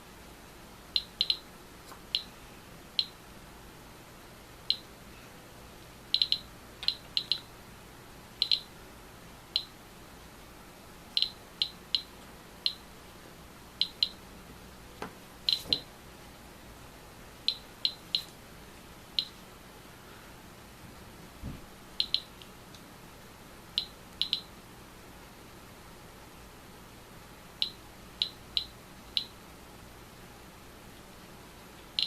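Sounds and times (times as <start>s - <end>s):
geiger counter clicking: 1.0s - 1.5s, 6.2s - 7.5s, 8.4s - 8.7s, 9.5s - 9.7s, 11.1s - 12.1s, 13.8s - 14.2s, 22.0s - 22.4s, 23.8s - 24.5s.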